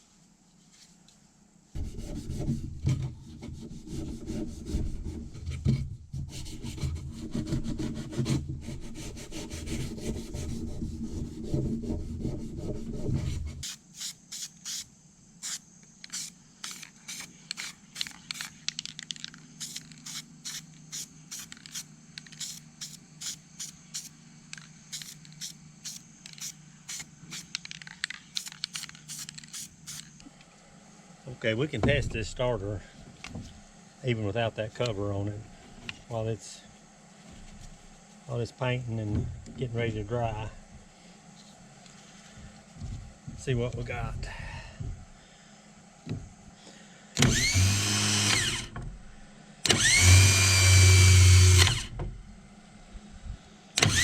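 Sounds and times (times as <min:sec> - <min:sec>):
faint hum: 0:00.0 - 0:49.9, 0:50.6 - 0:54.0
rough rubbing and scraping: 0:01.8 - 0:14.8.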